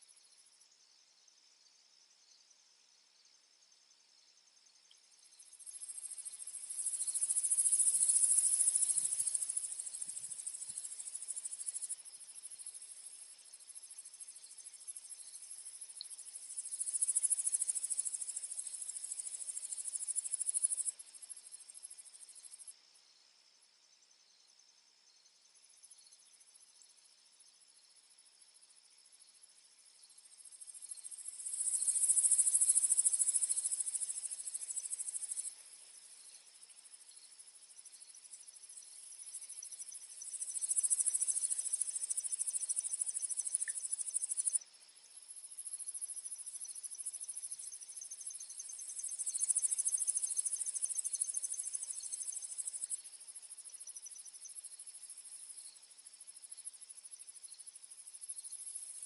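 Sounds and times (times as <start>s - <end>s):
crickets trilling: 3.2s - 22.7s, 29.9s - 59.0s
insect buzz: 4.6s - 22.7s, 30.0s - 59.0s.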